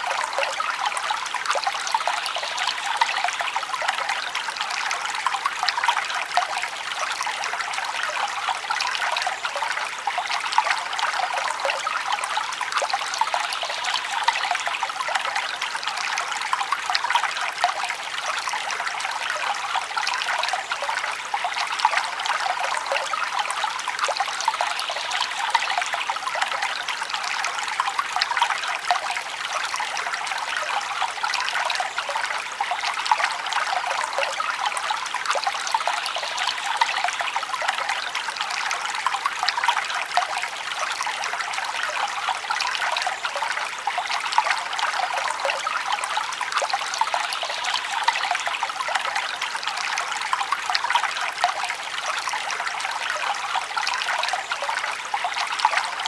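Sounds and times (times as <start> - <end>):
brook trickling and babbling: 0.0 - 56.0.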